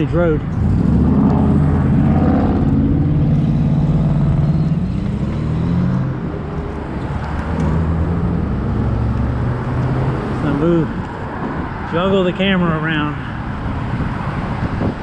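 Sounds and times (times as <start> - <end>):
vehicles passing: 0.0 - 15.0
wind rumbling on microphone: 9.4 - 15.0.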